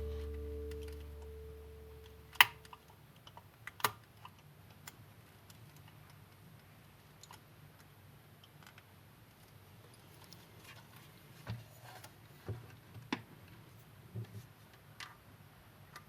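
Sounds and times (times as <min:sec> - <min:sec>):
held music chord: 0:00.0 - 0:02.2.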